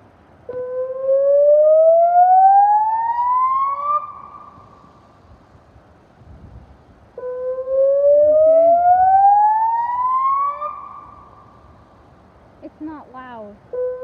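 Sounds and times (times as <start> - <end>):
outdoor warning siren wail: 0.5 - 4.8, 7.2 - 11.9, 13.7 - 14.0.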